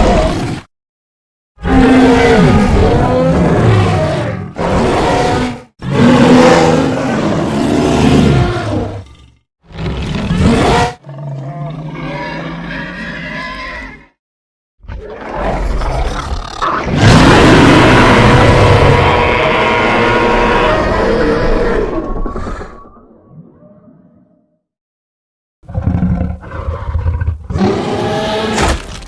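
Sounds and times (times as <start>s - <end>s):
low monster growl: 1.6s - 13.3s, 15.0s - 23.0s
monster roaring: 1.6s - 14.0s, 15.0s - 22.9s.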